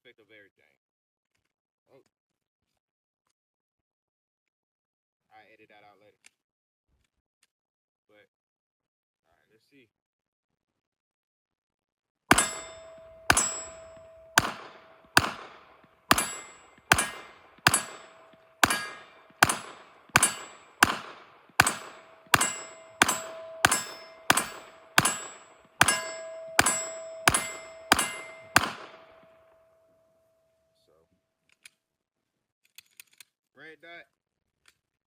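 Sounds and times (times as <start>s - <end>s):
pistol shots: 12.3s - 29.4s
steel target ringing: 12.3s - 29.7s.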